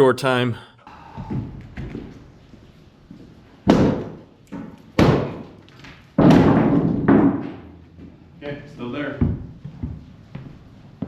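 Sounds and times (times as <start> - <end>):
sledgehammer hitting wood: 3.7 - 4.2, 5.0 - 5.4, 6.2 - 7.6.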